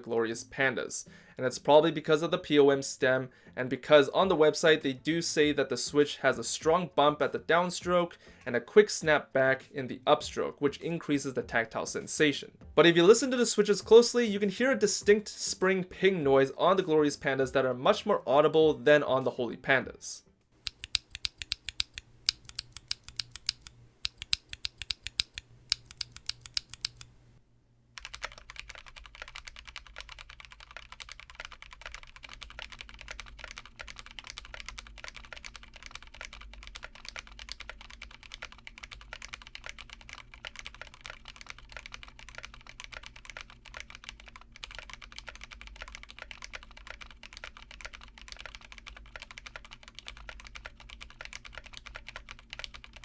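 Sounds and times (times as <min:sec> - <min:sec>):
mechanical keyboard typing: 0:20.6 - 0:27.1, 0:28.0 - 0:53.0.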